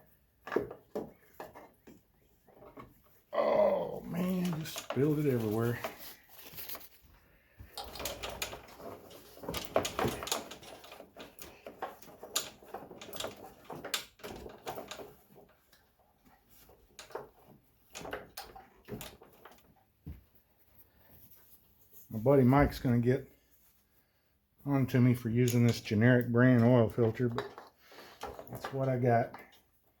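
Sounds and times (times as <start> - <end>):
tools clicking and scraping: 7.7 - 15.9.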